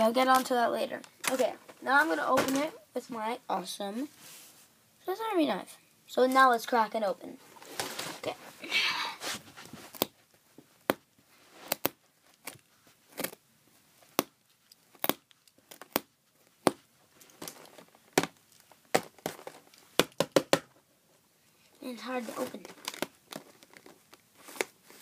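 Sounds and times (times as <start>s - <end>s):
plastic rustling: 21.8s - 25.0s.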